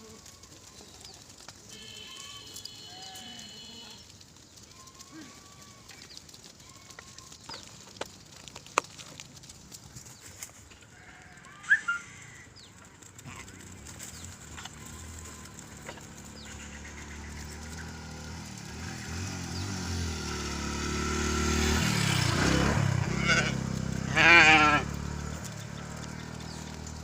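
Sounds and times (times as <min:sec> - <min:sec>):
motorcycle engine approaching: 0:00.0 - 0:27.0
bird chirp: 0:11.4 - 0:20.3, 0:25.2 - 0:27.0.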